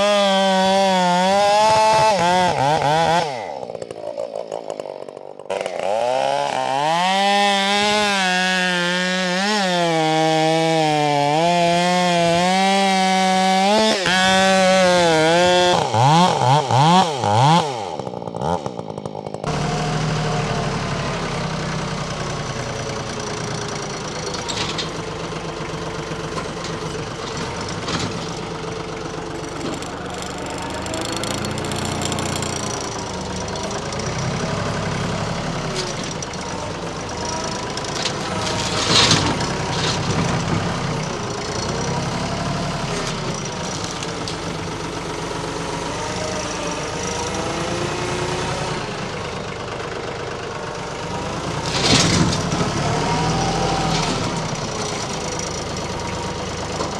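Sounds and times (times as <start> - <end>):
chainsaw cutting wood: 0.0 - 56.9
engine idling: 18.8 - 56.9.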